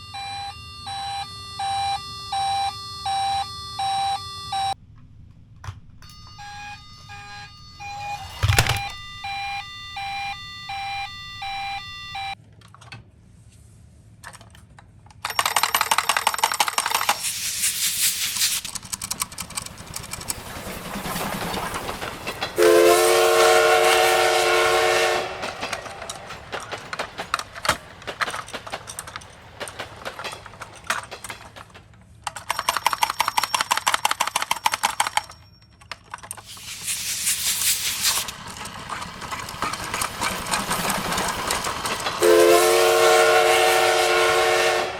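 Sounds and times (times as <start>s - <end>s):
toy siren electronic tones: 0.0s - 4.8s, 6.0s - 12.4s
toy cars rattling: 7.2s - 11.8s, 14.2s - 22.6s, 23.9s - 42.7s.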